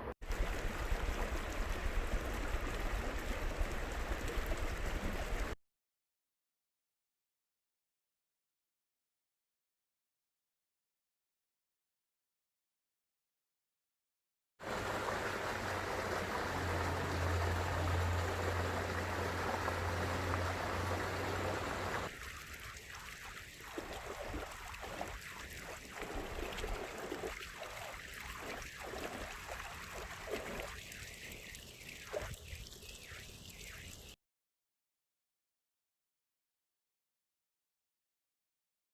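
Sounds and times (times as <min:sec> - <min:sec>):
water trickling and splashing: 0:00.2 - 0:05.6, 0:14.6 - 0:34.2
stream water rushing: 0:00.3 - 0:05.5, 0:14.6 - 0:33.9.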